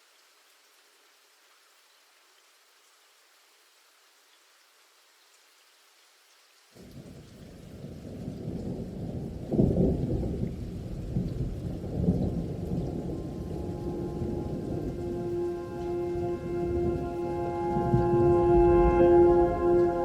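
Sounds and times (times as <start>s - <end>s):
rain: 0.0s - 20.0s
rolling thunder: 7.8s - 20.0s.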